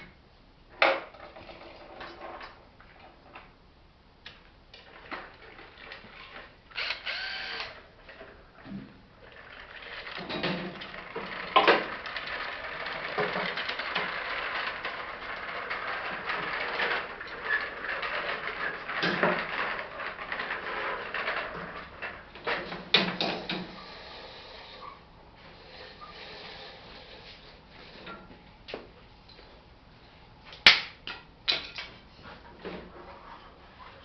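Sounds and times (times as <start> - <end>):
rattling scraping clatter: 9.3 - 23.8.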